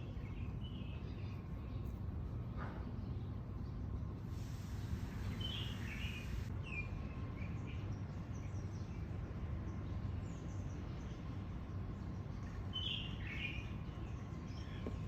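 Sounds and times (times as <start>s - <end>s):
low outdoor background rumble: 0.0s - 15.0s
birds chirping: 4.5s - 15.0s.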